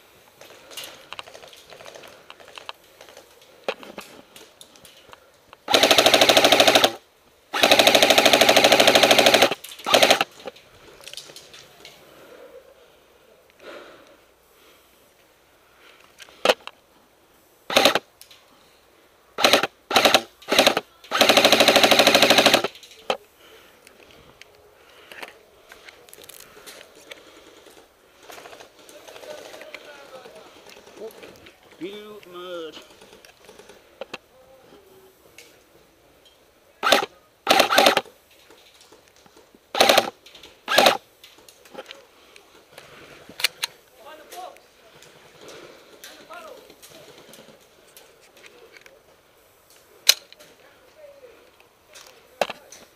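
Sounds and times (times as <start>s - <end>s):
airsoft gun bursts: 5.6s - 10.5s, 17.7s - 18.1s, 19.4s - 23.2s, 36.8s - 38.1s, 39.7s - 41.0s.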